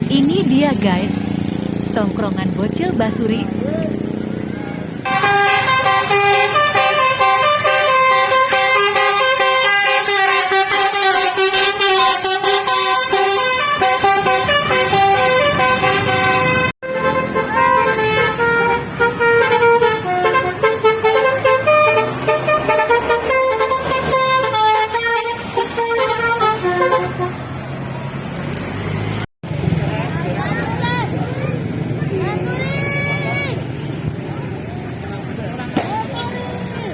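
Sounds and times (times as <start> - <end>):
bus multi-tone horn melody: 5.0 - 27.8.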